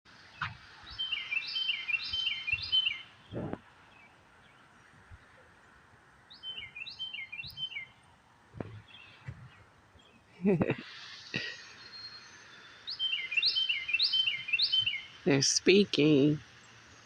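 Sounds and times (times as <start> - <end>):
songbird singing: 0.1 - 17.0
soft low thump: 8.6 - 9.5.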